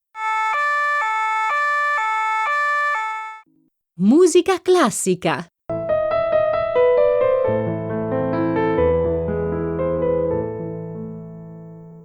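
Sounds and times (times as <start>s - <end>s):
classical electric piano music: 5.7s - 12.0s.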